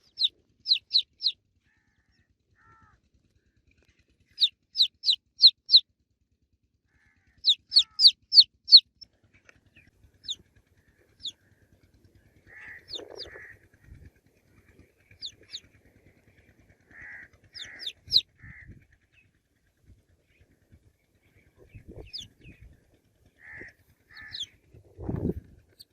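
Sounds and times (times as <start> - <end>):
baby chicks peeping: 0.0 - 1.4, 4.3 - 5.8, 7.4 - 9.0, 10.2 - 10.4, 11.1 - 11.4, 12.5 - 14.0, 15.1 - 15.7, 16.9 - 18.6, 21.6 - 22.7, 23.4 - 25.9.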